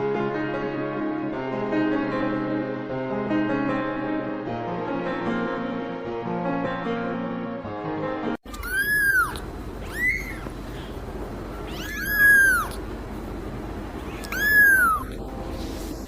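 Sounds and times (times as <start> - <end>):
cat meowing: 8.5 - 10.6, 11.5 - 12.8, 14.0 - 15.2.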